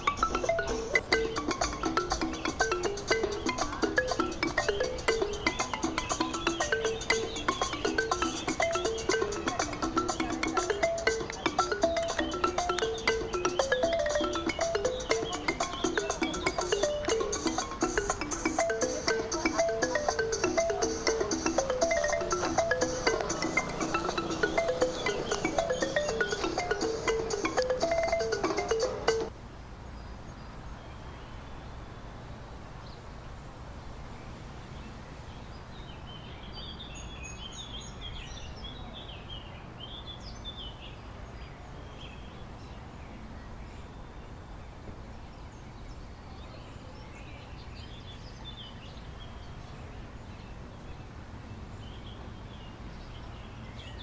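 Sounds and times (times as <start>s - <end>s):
birds chirping: 0.0s - 29.3s
music: 0.0s - 29.3s
low outdoor background hum: 0.0s - 54.0s.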